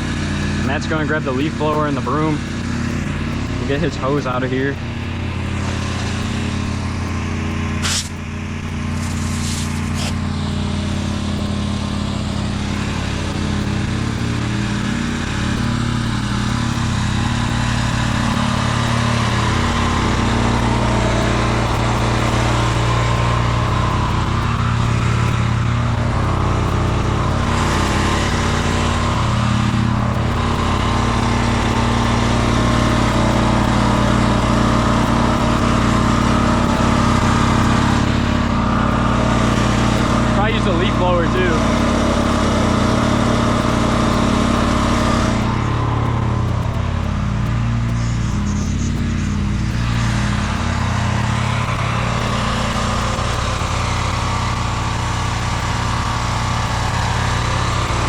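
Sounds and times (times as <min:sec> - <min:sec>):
pressure washer engine running: 0:00.0 - 0:58.0
short sharp hisses: 0:07.8 - 0:08.2, 0:09.0 - 0:10.2.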